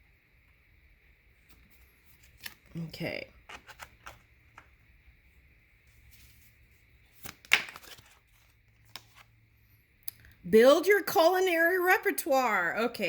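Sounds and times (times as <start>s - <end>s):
faint steady hum: 0.0s - 13.0s
cards rustling: 1.4s - 4.8s, 5.9s - 9.4s.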